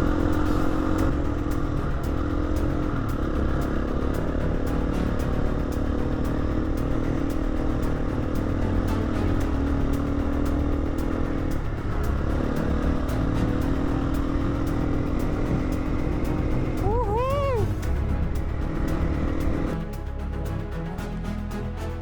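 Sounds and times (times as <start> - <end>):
background music: 0.0 - 22.0
dirt bike engine running: 9.8 - 17.6.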